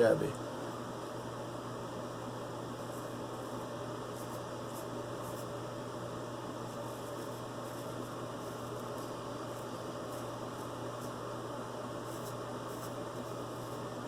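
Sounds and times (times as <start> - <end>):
room noise hum and hiss: 0.0 - 14.0
razor scratching stubble: 2.9 - 5.6, 6.7 - 11.2, 12.0 - 13.9.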